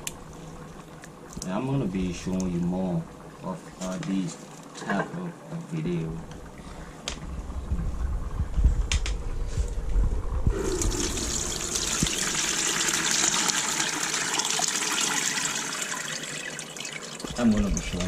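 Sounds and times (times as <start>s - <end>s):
low rumbling knocks: 6.3s - 12.4s
liquid rushing: 10.5s - 18.0s.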